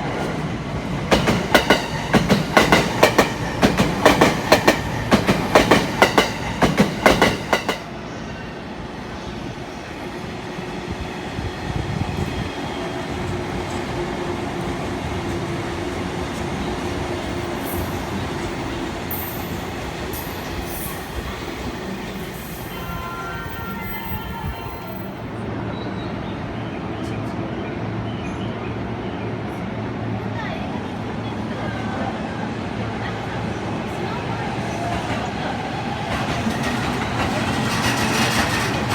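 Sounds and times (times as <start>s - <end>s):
train rail rumble: 0.0s - 26.2s, 29.4s - 38.9s
train wheels clacking over rail joints: 1.0s - 7.8s, 36.1s - 38.9s.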